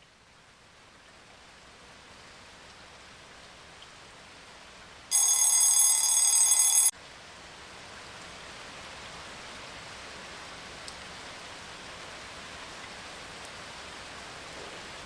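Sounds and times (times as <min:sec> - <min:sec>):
bright high ringing tones: 0:05.1 - 0:06.9.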